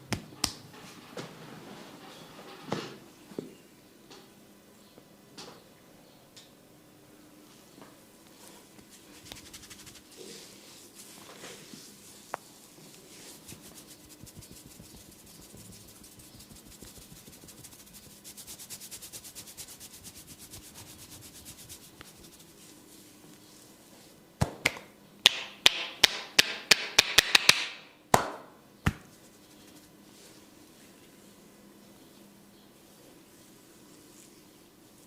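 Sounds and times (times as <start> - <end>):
finger strokes on scalp: 9.0 - 22.9
hand slaps on head: 24.4 - 29.1.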